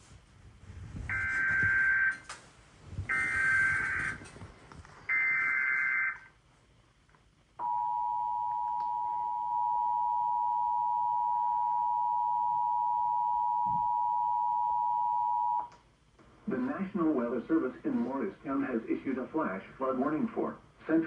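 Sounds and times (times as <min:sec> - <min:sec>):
two-tone attention signal: 0:03.1 - 0:04.2.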